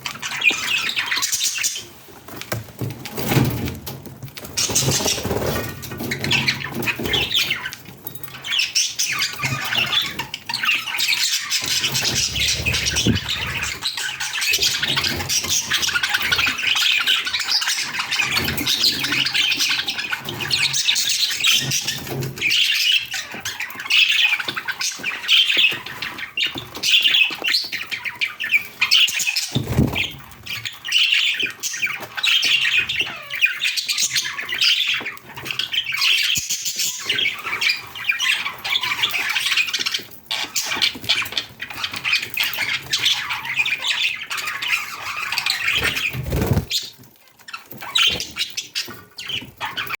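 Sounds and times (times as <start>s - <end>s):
budgerigars chattering: 8.4s - 46.9s.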